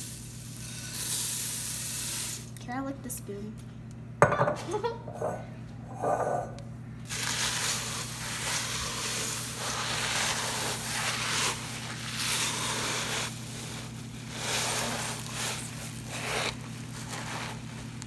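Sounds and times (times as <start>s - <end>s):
low steady hum: 2.2s - 18.0s
cereal rustling and crackling: 7.1s - 18.0s.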